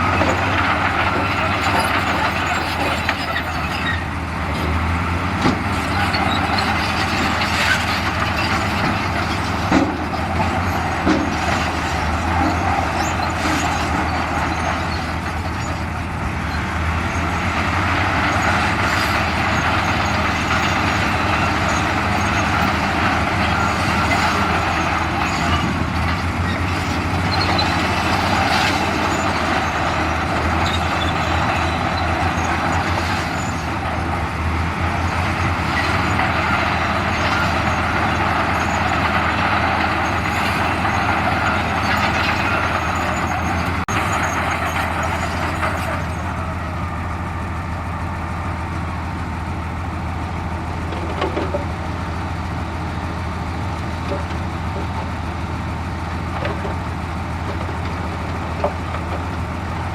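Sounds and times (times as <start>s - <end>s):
diesel earthmoving machinery drone: 0.0s - 59.9s.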